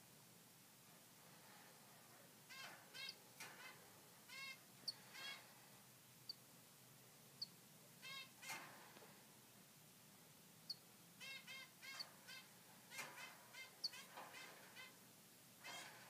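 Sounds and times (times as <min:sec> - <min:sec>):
nestling bird calling: 0:02.5 - 0:05.4, 0:10.7 - 0:15.0
high bird chirps: 0:10.7 - 0:14.9.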